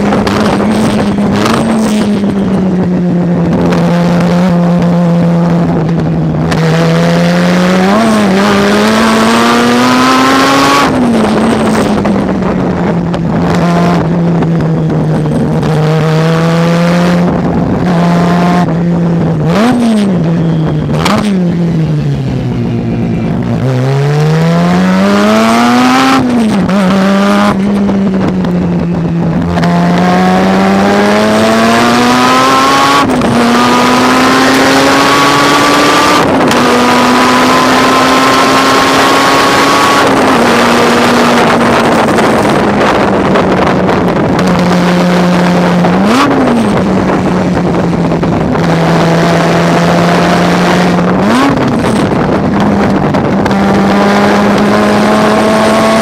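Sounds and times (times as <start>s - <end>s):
race car engine revving: 0.0s - 56.0s.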